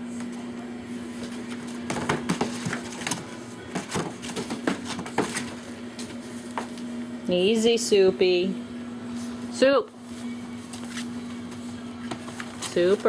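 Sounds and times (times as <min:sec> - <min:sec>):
steady low hum: 0:00.0 - 0:13.0
animals scuffling: 0:00.9 - 0:07.0, 0:10.0 - 0:13.0.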